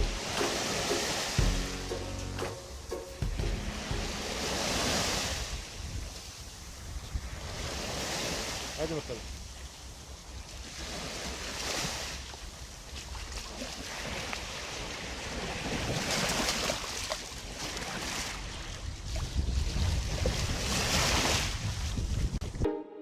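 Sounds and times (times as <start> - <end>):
sea waves washing in: 0.0 - 13.0, 13.6 - 22.4
wind buffeting microphone: 3.3 - 8.4, 18.3 - 22.7.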